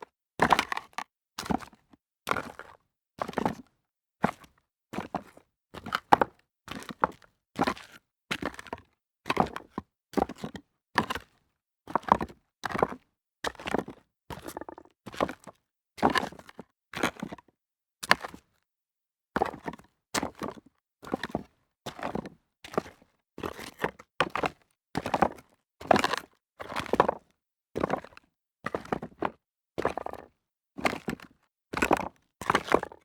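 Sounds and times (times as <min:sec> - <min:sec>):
footsteps on rocks: 0:14.6 - 0:14.9.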